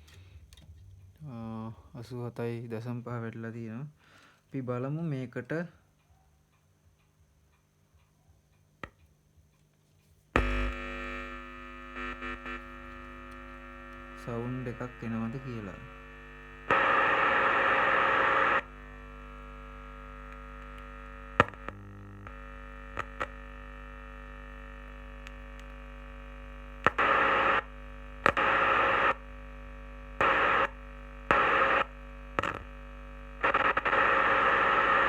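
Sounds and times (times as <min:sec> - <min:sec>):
mains hum: 0:00.0 - 0:35.0
radio static hiss bursts: 0:10.4 - 0:23.6, 0:26.8 - 0:35.0.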